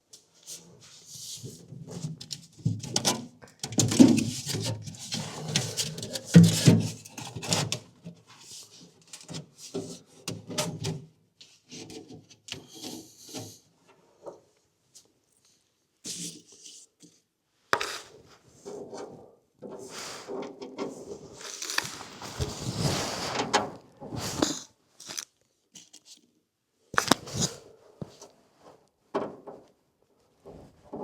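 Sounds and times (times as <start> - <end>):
cardboard pad scraping on metal: 21.4 - 25.2, 27.0 - 28.1.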